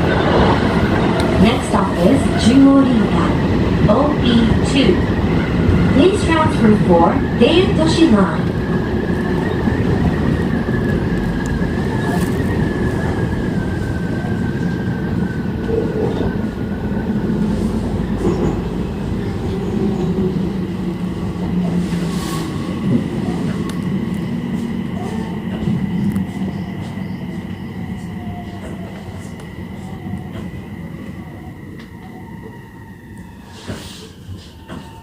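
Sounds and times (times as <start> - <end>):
train wheels rumbling on rail: 0.0 - 35.0.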